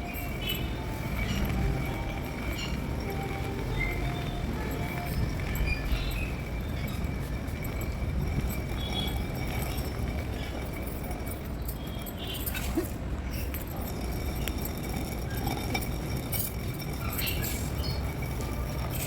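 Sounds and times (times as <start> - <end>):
light clinks: 0.1 - 19.0
stone grinder rumbling: 5.4 - 12.4, 13.4 - 19.0.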